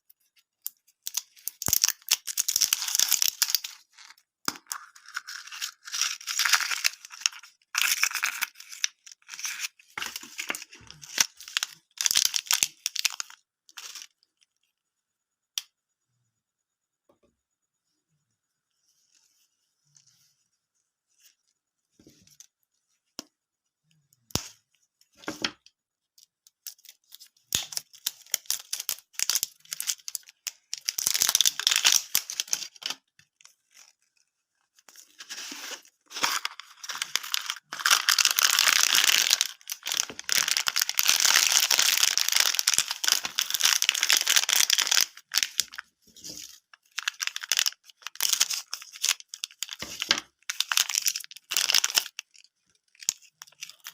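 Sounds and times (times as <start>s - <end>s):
plastic wrappers crinkling and tearing: 0.3s - 14.5s, 26.2s - 53.9s.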